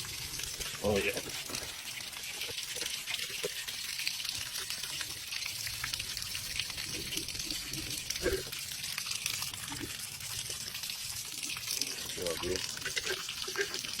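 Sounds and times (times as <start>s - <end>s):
water hissing and splashing: 0.0s - 14.0s.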